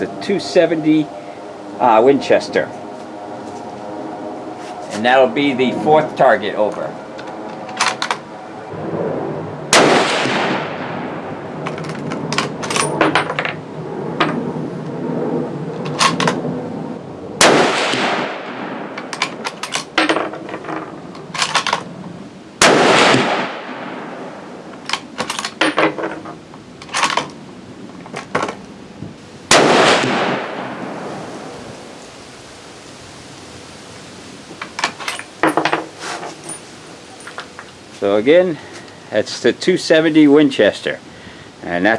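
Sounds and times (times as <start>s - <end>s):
rifle bolt clicking: 7.2s - 8.2s, 15.9s - 16.4s, 21.2s - 21.9s, 24.8s - 25.6s
rifle shots echoing: 9.7s - 11.2s, 17.4s - 19.0s, 22.6s - 24.2s, 29.5s - 30.9s.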